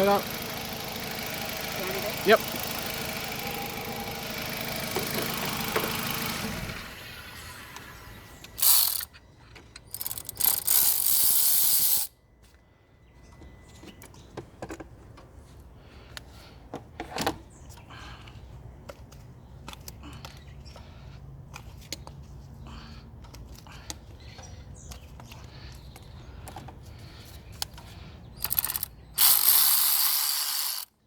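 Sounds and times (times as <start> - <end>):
car engine running: 0.0 - 8.6
hand tools clicking and rattling: 8.6 - 9.1, 9.7 - 12.1, 27.5 - 30.9.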